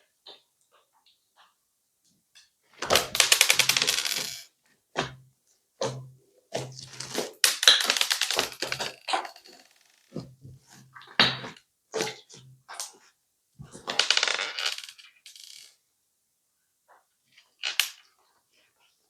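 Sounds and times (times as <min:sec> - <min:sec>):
crunchy slime crackling and popping: 0:06.6 - 0:09.6.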